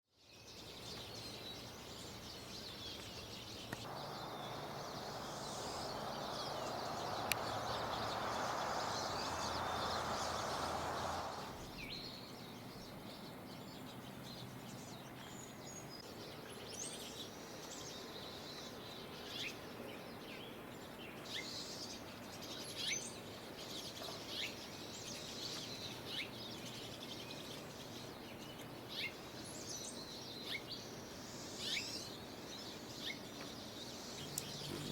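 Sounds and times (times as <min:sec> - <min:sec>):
small birds chirping: 0:00.3 - 0:19.6, 0:20.3 - 0:34.9
steady rushing noise with hum: 0:03.8 - 0:12.0.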